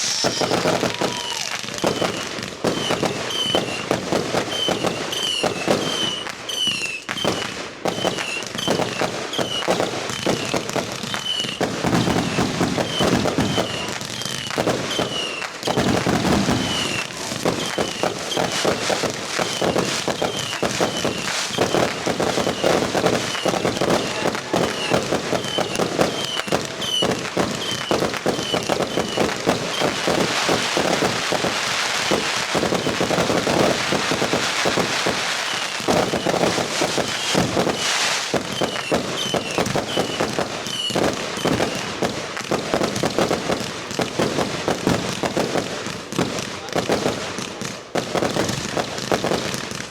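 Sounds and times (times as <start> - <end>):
hissing crackle: 0.0 - 2.4
fireworks banging and crackling: 0.0 - 49.9.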